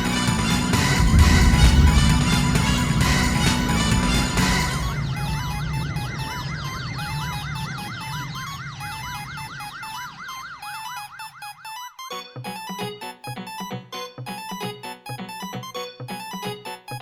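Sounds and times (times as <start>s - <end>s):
low hum: 0.0s - 10.8s
yelp siren warble: 0.0s - 12.6s
electric keyboard notes: 0.0s - 17.0s.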